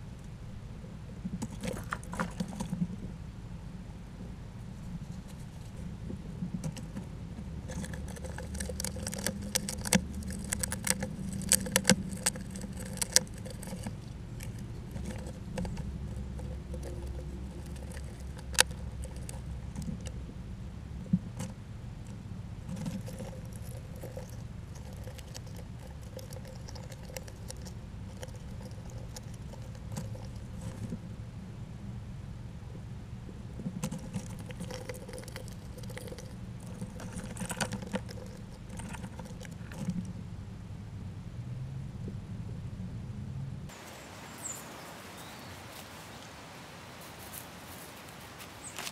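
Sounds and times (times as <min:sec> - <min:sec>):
low steady hum: 0:00.0 - 0:48.9
rodents clicking and scratching: 0:01.3 - 0:03.0, 0:04.9 - 0:20.2, 0:21.0 - 0:31.0, 0:33.5 - 0:40.1.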